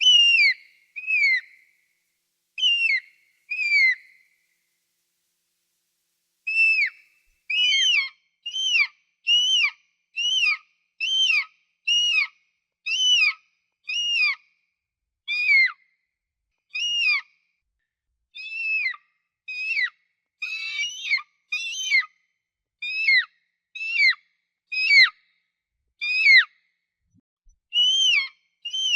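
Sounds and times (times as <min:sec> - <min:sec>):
eagle calling: 0:00.0 - 0:01.7, 0:02.6 - 0:04.3, 0:06.5 - 0:08.0, 0:27.8 - 0:28.9.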